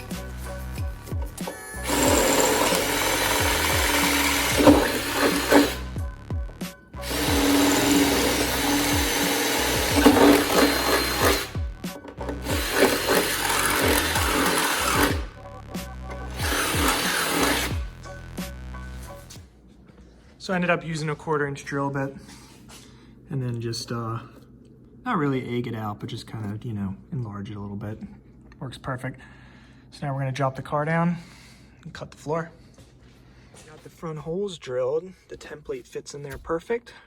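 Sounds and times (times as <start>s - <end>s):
power drill boring through metal: 1.4s - 6.0s, 7.0s - 15.4s, 16.1s - 18.0s.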